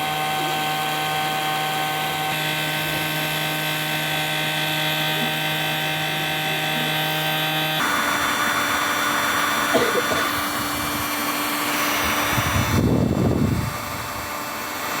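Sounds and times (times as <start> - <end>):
hot air gun hissing: 7.8 - 15.0.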